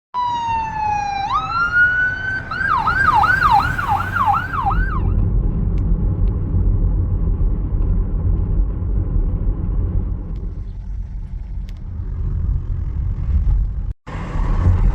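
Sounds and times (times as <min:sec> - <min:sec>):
emergency vehicle siren: 0:00.1 - 0:05.2
low traffic rumble: 0:00.2 - 0:14.9.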